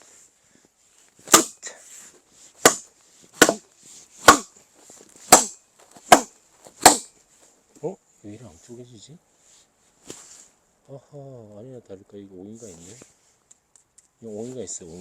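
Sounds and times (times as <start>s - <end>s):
axe striking log: 1.2s - 1.6s, 2.6s - 4.5s, 5.2s - 7.1s.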